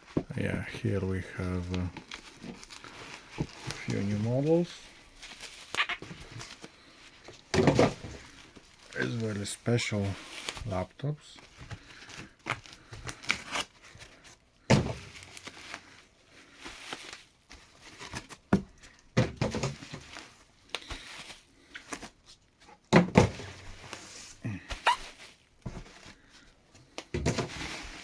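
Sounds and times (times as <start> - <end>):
packaging rustling: 0.0 - 22.6.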